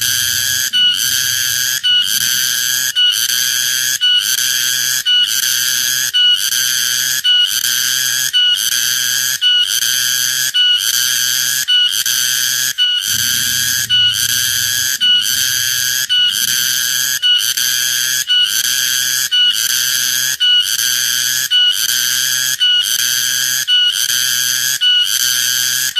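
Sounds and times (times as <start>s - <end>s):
cicada buzzing loudly: 0.0s - 10.4s, 13.1s - 25.9s.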